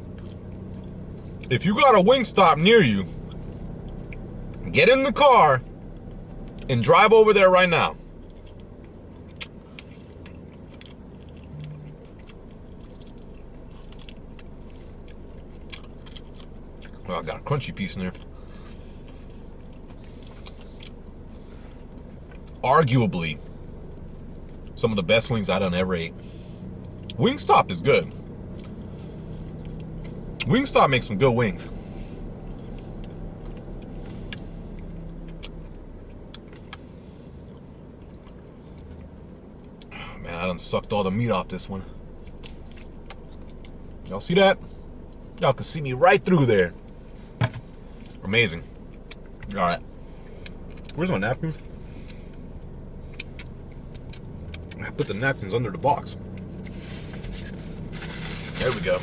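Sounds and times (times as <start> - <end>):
car engine idling: 0.0 - 59.0
steady low hum: 0.0 - 59.0
person chewing wetly: 8.2 - 17.0, 18.1 - 21.0, 28.5 - 30.2, 32.5 - 39.9, 42.2 - 43.8, 51.6 - 54.8.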